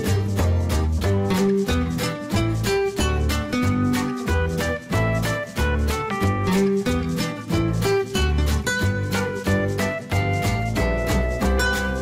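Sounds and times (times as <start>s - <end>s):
upbeat music with plucked guitar: 0.0s - 12.0s.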